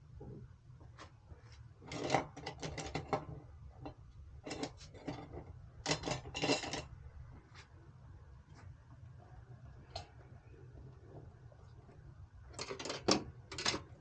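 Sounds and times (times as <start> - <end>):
low steady hum: 0.0 - 14.0
small hard parts clicking and rattling: 1.8 - 7.0, 12.5 - 14.0.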